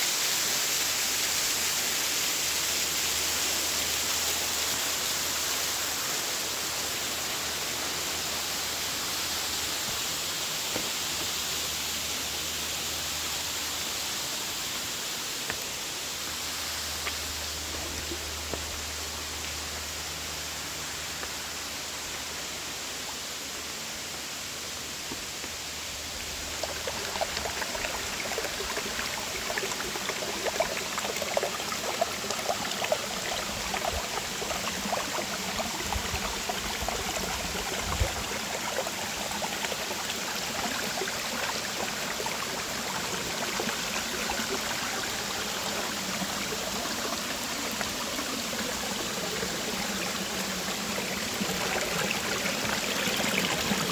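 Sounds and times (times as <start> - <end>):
creek water rushing over rocks: 0.0 - 53.9
water splashing and gurgling: 26.1 - 53.9.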